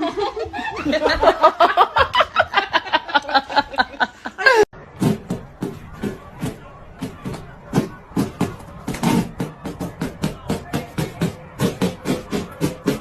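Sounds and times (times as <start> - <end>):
person laughing hard: 0.0 - 4.7.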